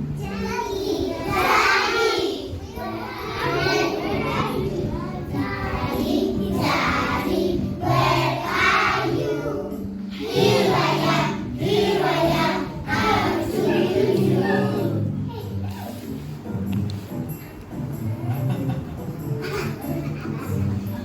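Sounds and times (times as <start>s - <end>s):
children singing together: 0.0s - 15.3s
instrumental backing with bass: 0.0s - 21.0s.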